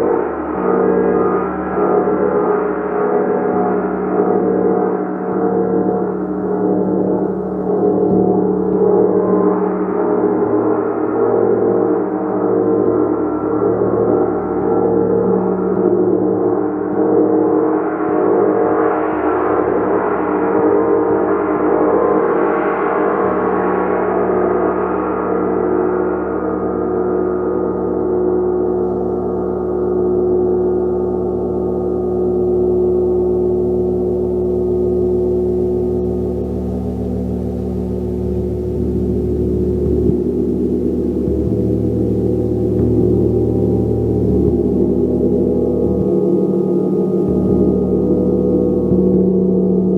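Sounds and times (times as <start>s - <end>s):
gong ringing: 35.4s - 49.9s.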